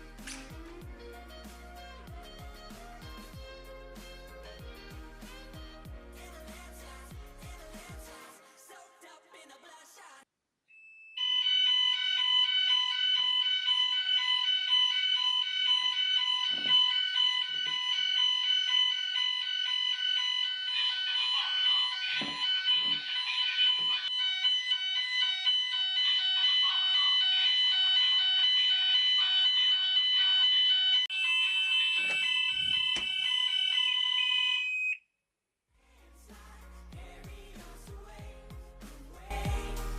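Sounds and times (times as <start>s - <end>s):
fire alarm sounders: 11.1s - 35.0s.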